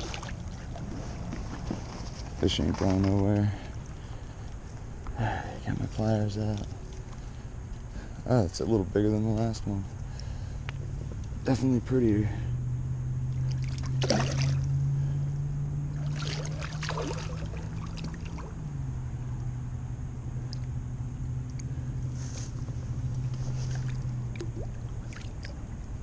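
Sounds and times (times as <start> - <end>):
fish thrashing in water: 0.0 - 4.0, 13.3 - 14.8, 15.9 - 18.6, 23.2 - 25.7
steady low hum: 0.0 - 26.0.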